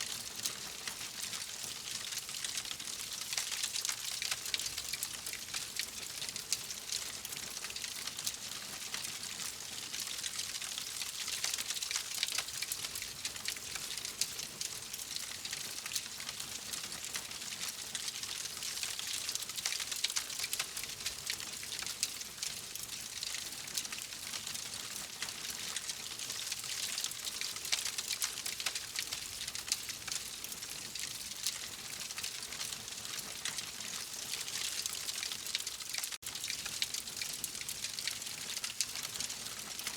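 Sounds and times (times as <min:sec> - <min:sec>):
wood fire crackling: 0:26.7 - 0:39.9.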